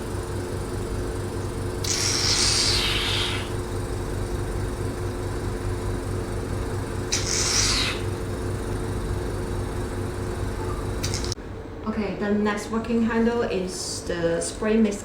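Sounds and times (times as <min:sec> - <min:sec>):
vacuum pump pulsing hum: 0:00.0 - 0:15.0
short hisses of air: 0:01.8 - 0:03.5, 0:07.1 - 0:08.1.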